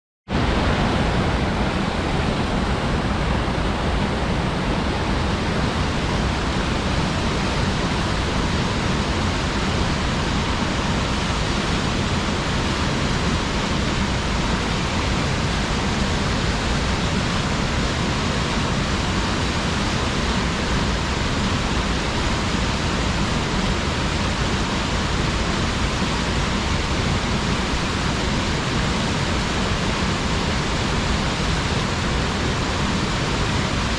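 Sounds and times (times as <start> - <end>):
waterfall rushing: 0.3 - 33.9.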